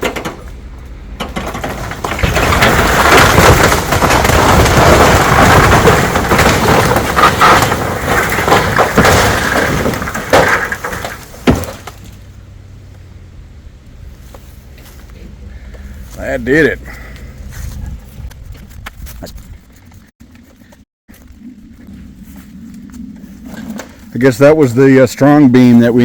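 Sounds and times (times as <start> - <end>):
boards crashing down: 0.0 - 12.2
timbers cracking and splintering: 0.0 - 12.3.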